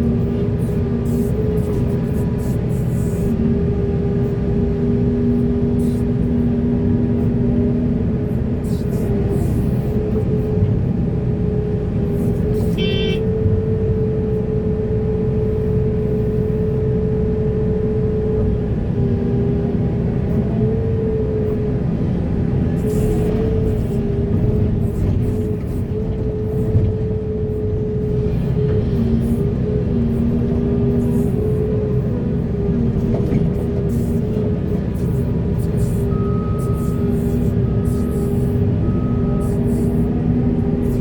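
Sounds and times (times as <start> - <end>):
heavy diesel machinery rumble: 0.0 - 41.0
brief high tone: 12.8 - 13.2.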